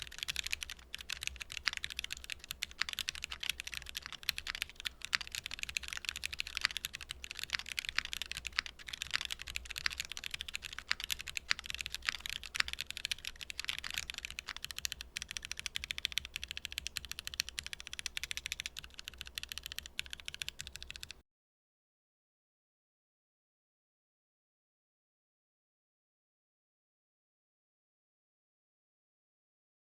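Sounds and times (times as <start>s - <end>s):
fast mechanical keyboard typing: 0.0s - 21.2s.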